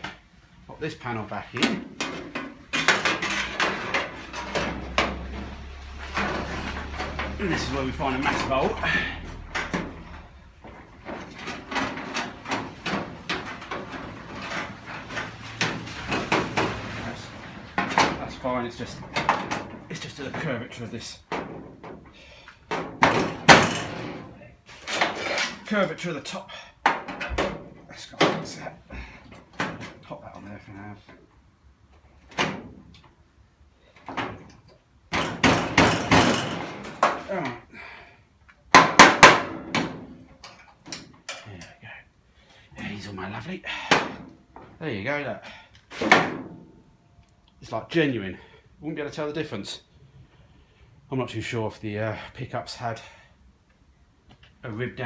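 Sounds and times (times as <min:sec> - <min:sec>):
sheet metal knocks and scrapes: 0:01.6 - 0:25.7, 0:34.0 - 0:37.3, 0:38.8 - 0:41.4, 0:45.9 - 0:46.7
knocks on metal panel: 0:38.8 - 0:40.0.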